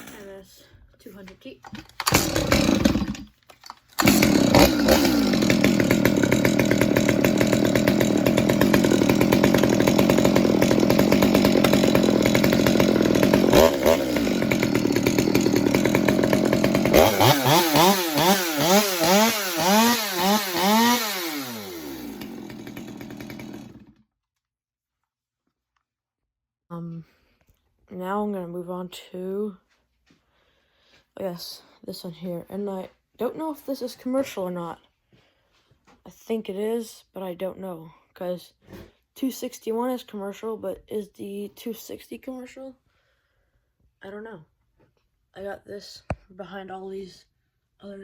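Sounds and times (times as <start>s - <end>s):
chainsaw running and revving: 2.0s - 3.3s, 4.0s - 24.0s.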